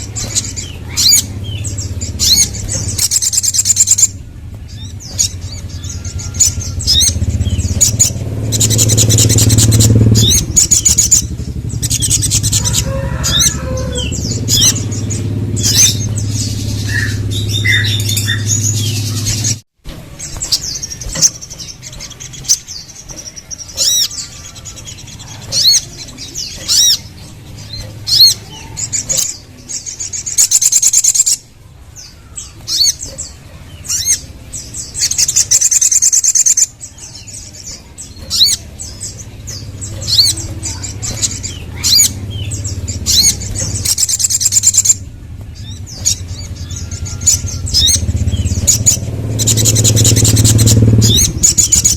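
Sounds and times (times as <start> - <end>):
steady low hum: 0.0 - 30.6, 31.2 - 51.9
bird chirping and trilling: 0.0 - 51.9.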